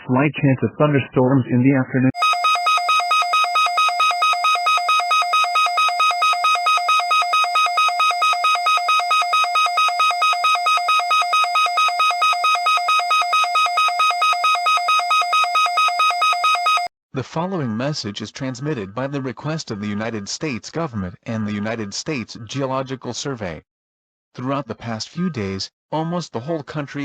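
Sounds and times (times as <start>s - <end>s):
pulsing two-tone alert signal: 2.2s - 16.9s.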